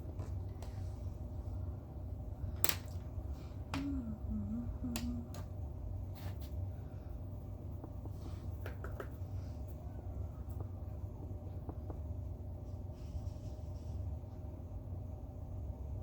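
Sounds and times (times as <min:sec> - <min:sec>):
low room hum: 0:00.0 - 0:16.0
wavering low tone: 0:03.8 - 0:05.4.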